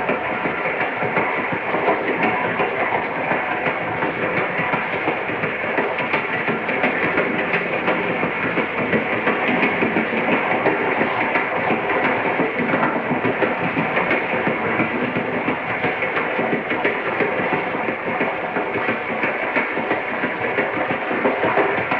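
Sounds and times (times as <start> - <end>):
train rumbling and rattling: 0.0 - 21.9.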